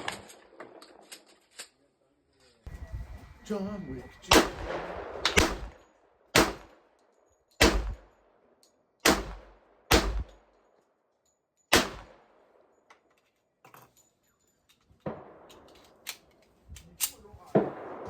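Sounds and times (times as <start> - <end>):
gunshots with echo: 4.3 - 6.8, 7.6 - 8.1, 9.0 - 10.4, 11.7 - 12.3, 17.5 - 18.0.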